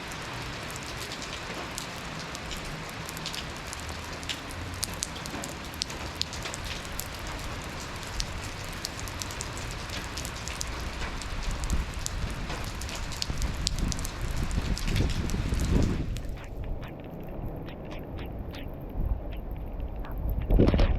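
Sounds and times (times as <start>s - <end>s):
steady rain hiss: 0.0s - 20.6s
raindrops ticking close by: 0.0s - 20.9s
low rumble: 13.3s - 20.9s.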